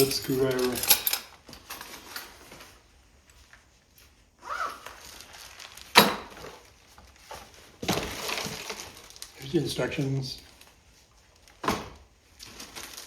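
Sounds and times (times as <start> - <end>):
packaging rustling: 4.8 - 9.6, 10.4 - 13.0.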